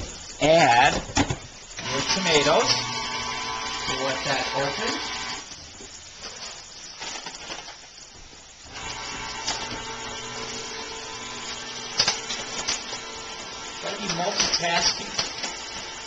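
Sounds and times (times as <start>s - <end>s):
electric can opener motor hum: 1.8s - 5.5s, 8.7s - 16.0s.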